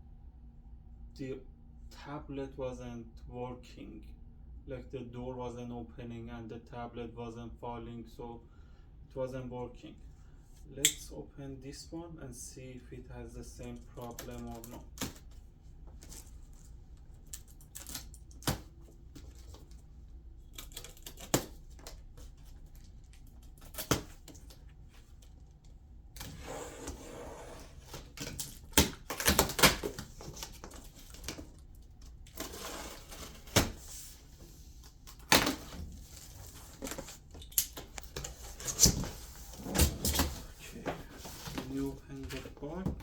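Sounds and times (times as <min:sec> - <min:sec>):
cardboard rustling and scraping: 0:26.2 - 0:43.0.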